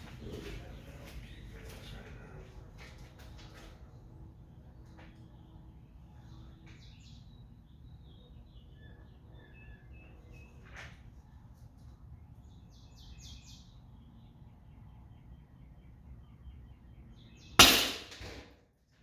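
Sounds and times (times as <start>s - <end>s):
faint bird chirps: 5.2s - 11.4s.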